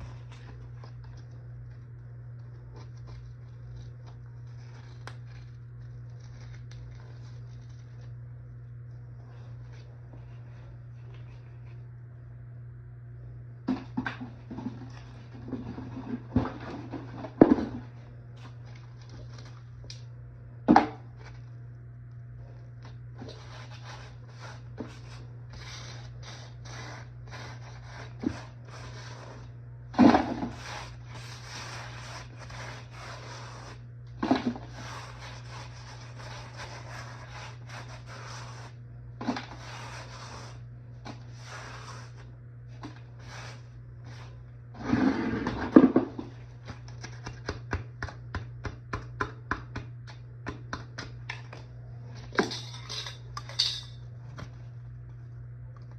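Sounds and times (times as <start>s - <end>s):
low hum: 0.0s - 46.9s
scraping and rubbing: 23.2s - 45.9s.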